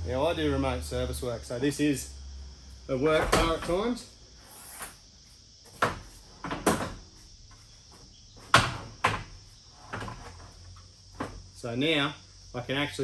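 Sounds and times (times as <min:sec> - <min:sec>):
sharp knocks and clunks: 0:03.1 - 0:03.9, 0:05.7 - 0:11.5.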